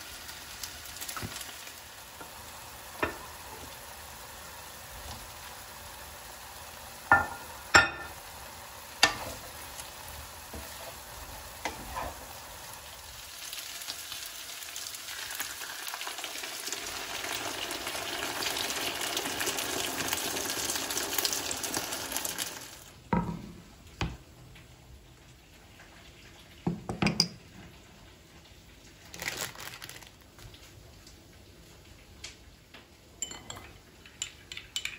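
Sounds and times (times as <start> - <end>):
food sizzling in a frying pan: 0.0 - 23.8, 25.4 - 34.9
utensils and dishes clinking: 33.2 - 34.9.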